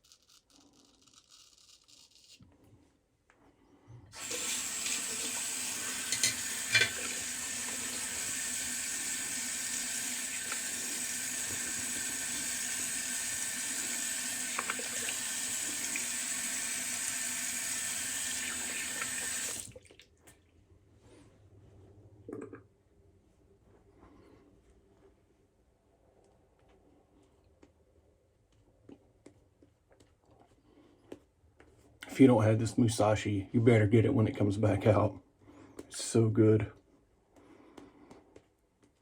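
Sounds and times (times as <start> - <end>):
tap water running into sink: 4.2 - 19.9.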